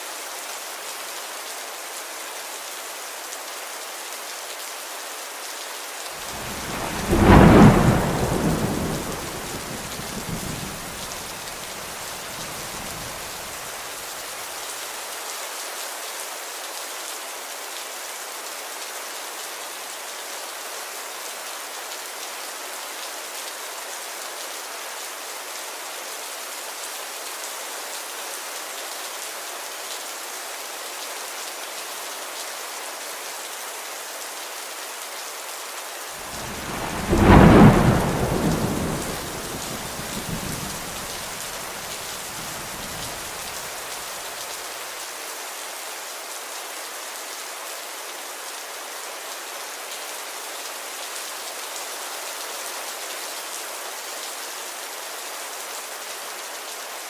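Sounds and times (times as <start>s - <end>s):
steady rain hiss: 0.0s - 57.0s
thunder clap rumbling: 6.3s - 11.6s, 36.3s - 43.5s.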